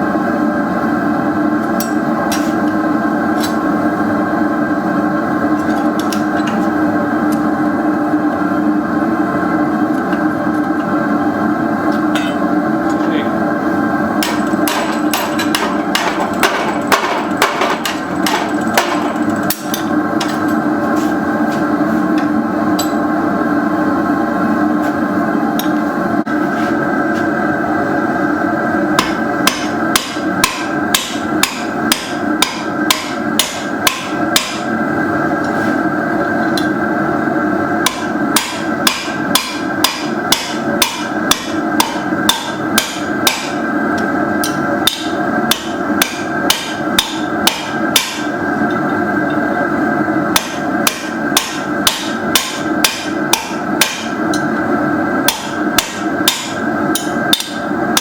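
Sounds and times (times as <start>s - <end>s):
hammer striking steel on anvil: 11.9s - 12.5s, 14.2s - 20.6s, 22.2s - 23.0s, 29.0s - 34.7s, 37.8s - 43.6s, 44.4s - 48.4s, 50.4s - 54.6s, 55.2s - 58.0s.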